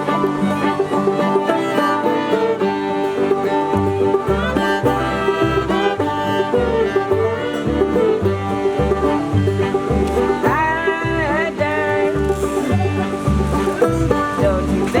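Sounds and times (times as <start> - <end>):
banjo: 0.0 - 15.0
fiddle: 0.0 - 15.0
guitar: 0.0 - 15.0
low bass notes: 0.0 - 15.0
person singing: 10.4 - 15.0.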